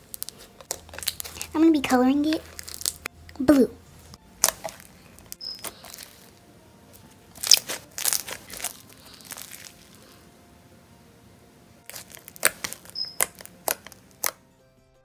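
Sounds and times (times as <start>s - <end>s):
slime squished by hand: 0.0s - 6.4s, 7.3s - 10.2s, 11.8s - 14.4s.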